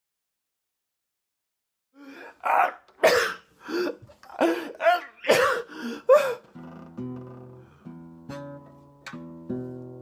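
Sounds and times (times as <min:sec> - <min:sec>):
person sneezing and gasping: 0:02.0 - 0:06.5
acoustic guitar blues chords: 0:06.4 - 0:10.0.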